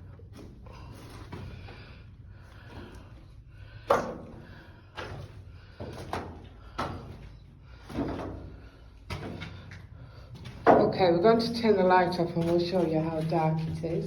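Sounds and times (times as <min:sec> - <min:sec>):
footsteps on debris: 0:09.0 - 0:14.0.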